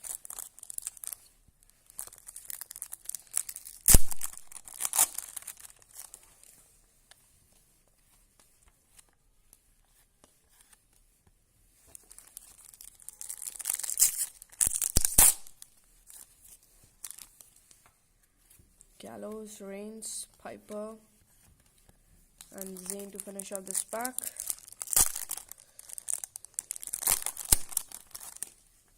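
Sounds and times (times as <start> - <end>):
foil packets tearing and crinkling: 0.0 - 1.2, 1.8 - 6.2, 12.0 - 16.2, 17.0 - 17.4, 22.4 - 28.6.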